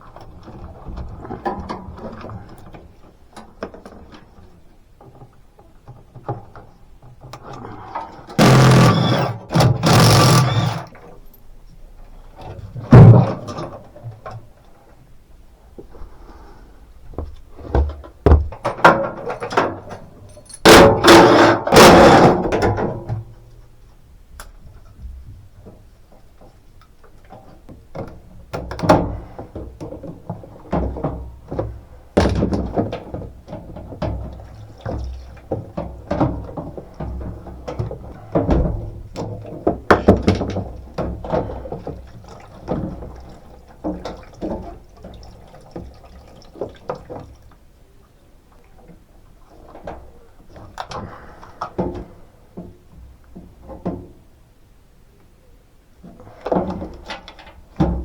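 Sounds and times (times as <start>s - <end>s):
machine parts knocking and clattering: 8.4s - 11.0s.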